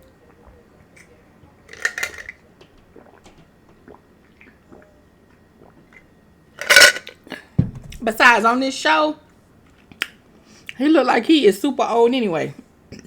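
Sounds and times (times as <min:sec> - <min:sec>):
dishes handling noise: 0:01.7 - 0:03.5, 0:06.6 - 0:07.9.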